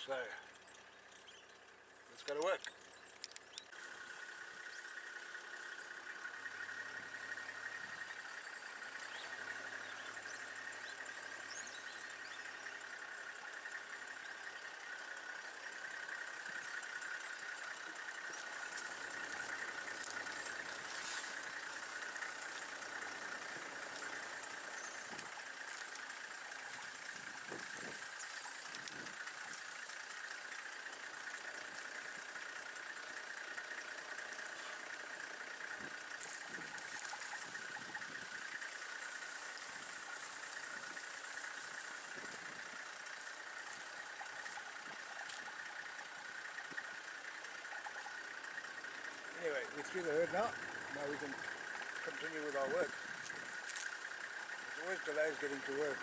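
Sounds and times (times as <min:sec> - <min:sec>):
constant high hum: 0:00.0 - 0:56.0
vehicle engine running: 0:00.0 - 0:56.0.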